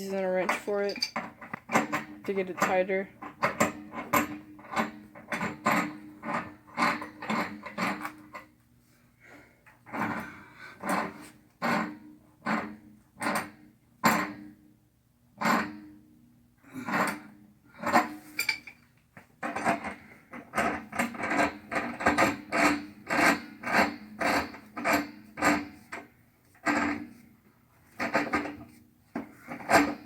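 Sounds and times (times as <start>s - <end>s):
rasping on copper pipe: 0.1s - 8.3s, 19.4s - 27.2s, 27.9s - 30.0s.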